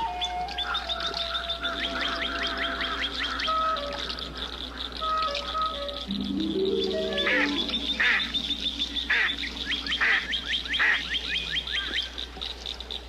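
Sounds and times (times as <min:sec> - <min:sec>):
small birds chirping: 0:00.0 - 0:13.0
duck quacking: 0:07.3 - 0:08.4, 0:09.0 - 0:11.1.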